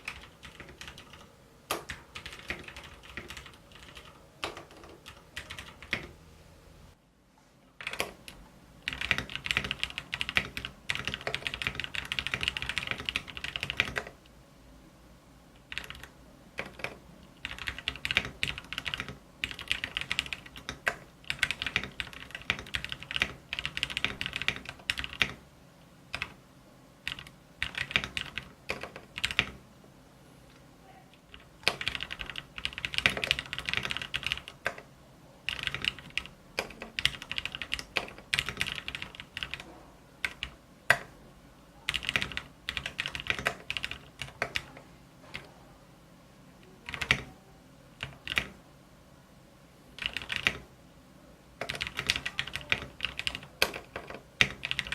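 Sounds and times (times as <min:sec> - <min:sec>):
mechanical keyboard typing: 0:00.0 - 0:06.2, 0:07.8 - 0:14.2, 0:15.6 - 0:25.4, 0:26.1 - 0:26.4, 0:27.0 - 0:29.6, 0:31.1 - 0:34.9, 0:35.5 - 0:41.2, 0:41.9 - 0:45.5, 0:46.9 - 0:47.3, 0:48.0 - 0:48.6, 0:50.0 - 0:50.7, 0:51.6 - 0:54.9.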